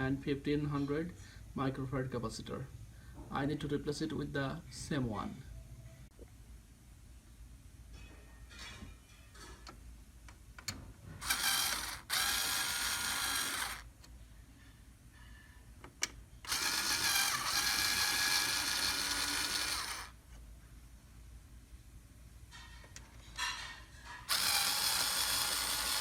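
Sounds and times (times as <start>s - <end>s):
electric screwdriver running: 11.2s - 13.9s, 16.5s - 20.2s, 24.3s - 26.0s.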